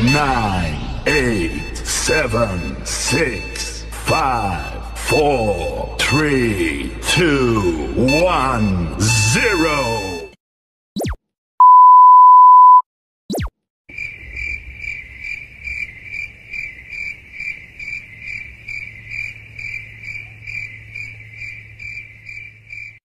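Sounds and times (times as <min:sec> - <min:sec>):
censor beep: 0:11.6 - 0:12.8
crickets chirping: 0:13.9 - 0:23.0.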